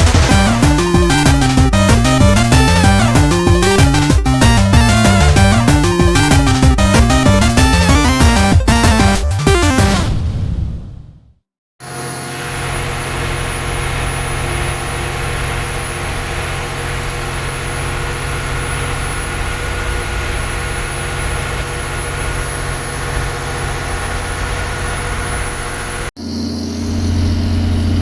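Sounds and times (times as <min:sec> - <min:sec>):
boat engine droning: 0:12.0 - 0:26.0.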